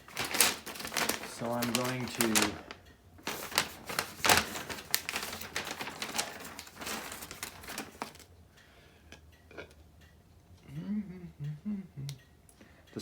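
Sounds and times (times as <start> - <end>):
rustling: 0.0 - 8.3
light clicks of small parts: 0.1 - 8.3.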